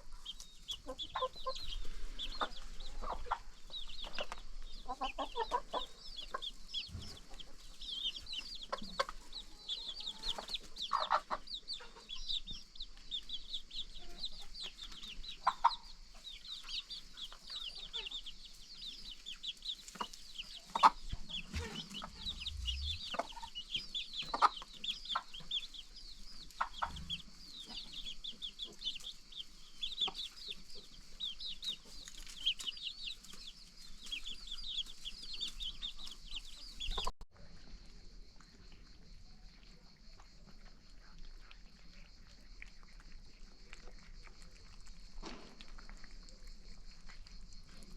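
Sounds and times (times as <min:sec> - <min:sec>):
chickens clucking: 0:00.0 - 0:37.2
high quick chirps: 0:21.3 - 0:23.5.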